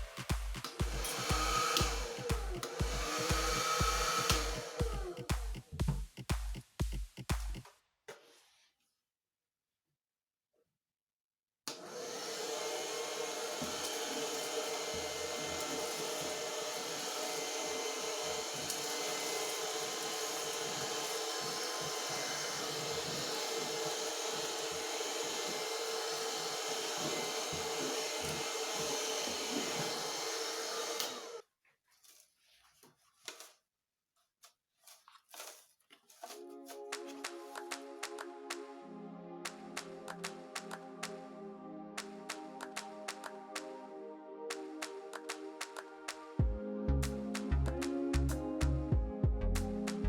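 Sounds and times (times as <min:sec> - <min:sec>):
vacuum cleaner motor whining: 0:00.1 - 0:05.3, 0:11.7 - 0:31.4.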